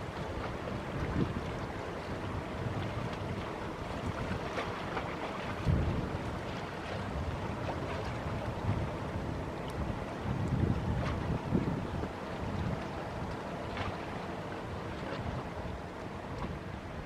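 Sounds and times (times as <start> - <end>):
wind buffeting microphone: 0.0 - 13.9.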